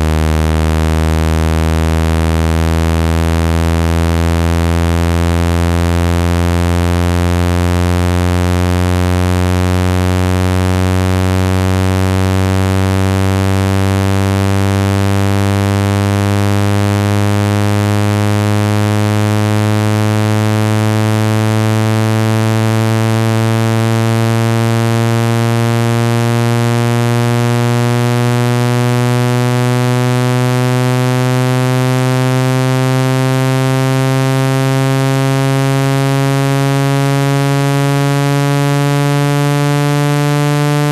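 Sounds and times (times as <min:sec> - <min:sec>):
low buzzy rising tone: 0:00.0 - 0:40.9.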